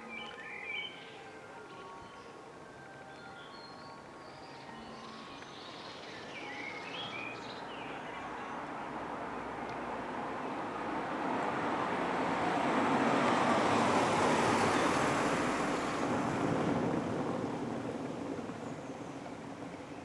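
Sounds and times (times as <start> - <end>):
road vehicle passing by: 6.9 - 18.6.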